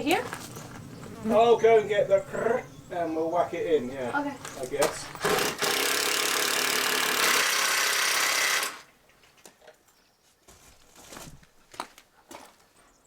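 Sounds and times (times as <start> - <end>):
power tool running: 5.1 - 8.9.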